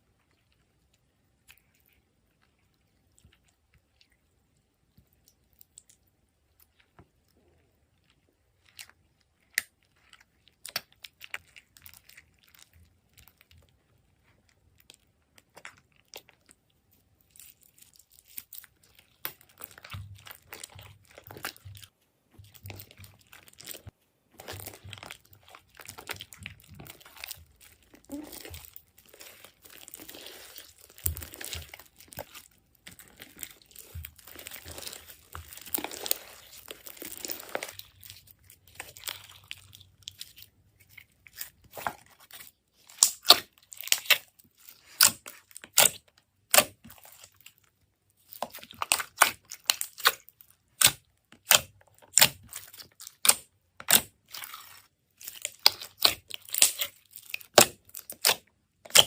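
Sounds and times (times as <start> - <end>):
crinkly rustling and tearing: 17.2 - 46.1
slime squeezed and pulled: 17.3 - 47.5.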